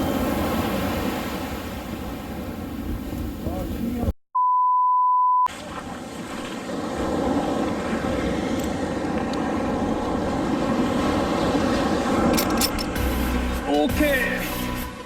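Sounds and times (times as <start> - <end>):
beach surf: 0.0 - 4.1, 5.5 - 14.8
wind on microphone: 0.0 - 4.1, 5.6 - 13.0
electronic beep: 4.4 - 5.5.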